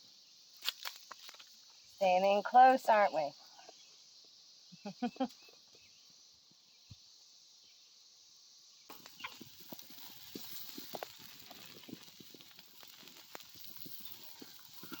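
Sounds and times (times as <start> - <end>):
steady hiss: 0.0 - 15.0
campfire crackling and popping: 8.9 - 15.0.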